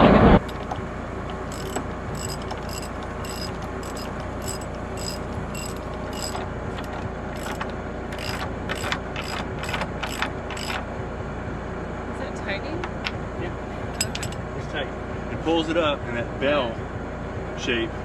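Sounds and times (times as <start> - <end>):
ratchet wrench clicking: 0.4 - 10.8, 14.0 - 14.4.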